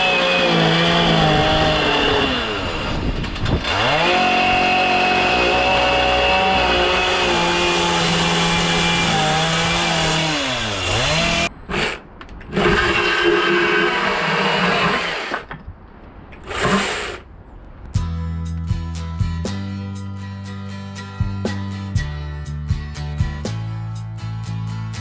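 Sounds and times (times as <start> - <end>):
chainsaw carving wood: 0.0 - 15.5, 16.4 - 17.2.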